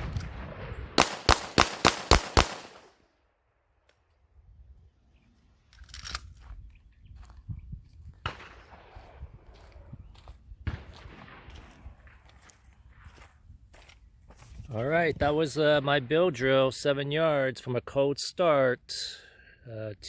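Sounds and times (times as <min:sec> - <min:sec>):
pistol shots with ringing echo: 0:00.2 - 0:03.1, 0:08.2 - 0:09.2, 0:10.6 - 0:12.2.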